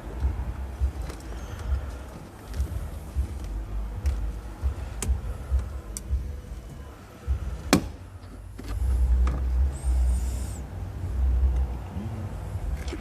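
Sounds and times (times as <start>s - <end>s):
low uneven rumble: 0.0s - 13.0s.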